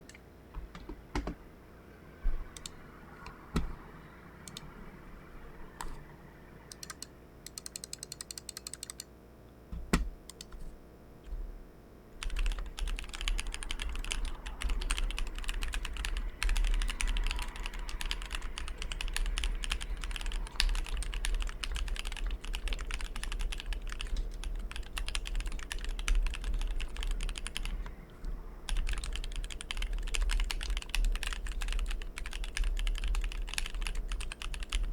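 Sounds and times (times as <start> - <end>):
mechanical keyboard typing: 6.7 - 9.1, 12.2 - 28.0, 28.7 - 34.9.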